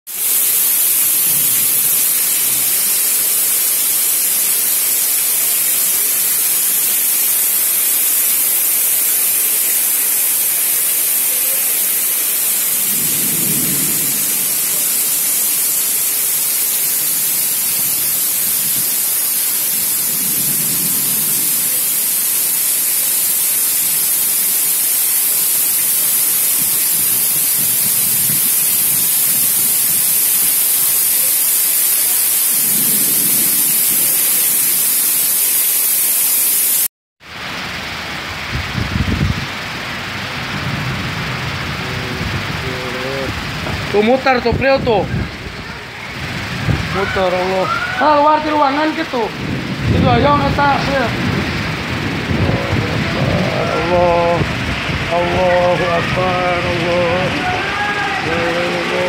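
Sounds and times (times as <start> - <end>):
heavy rain in strong wind: 0.1 - 59.0
low rumbles: 12.8 - 18.9, 37.3 - 47.7, 49.0 - 59.0.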